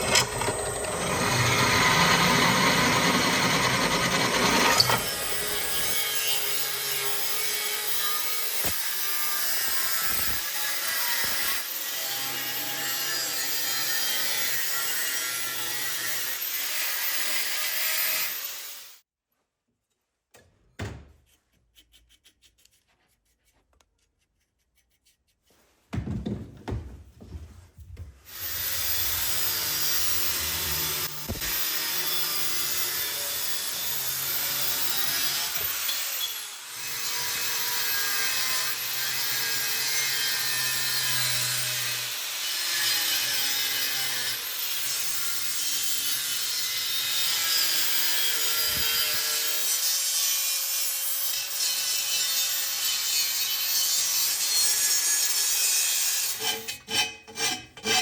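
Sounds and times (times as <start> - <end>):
tool rasping on steel: 21.2 - 25.6, 54.9 - 58.0.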